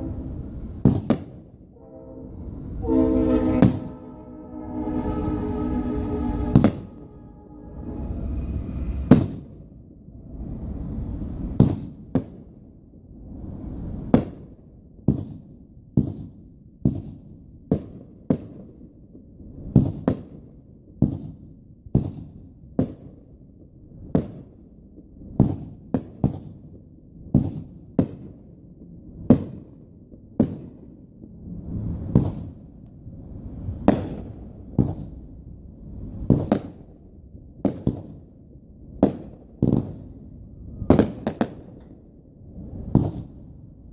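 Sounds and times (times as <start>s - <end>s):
fireworks bursting: 0.0s - 2.1s, 2.8s - 4.2s, 5.9s - 7.2s, 8.8s - 9.6s, 29.3s - 30.9s, 32.0s - 32.6s, 33.6s - 35.3s, 35.9s - 37.0s, 37.6s - 40.3s, 40.9s - 41.9s, 42.6s - 43.5s
low rumble: 0.0s - 11.4s
fireworks hissing launches: 31.6s - 36.8s.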